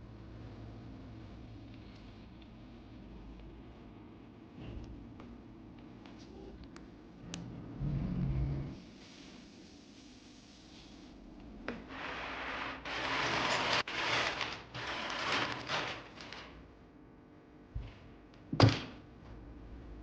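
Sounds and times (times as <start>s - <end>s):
rustling and scraping: 11.7s - 16.6s.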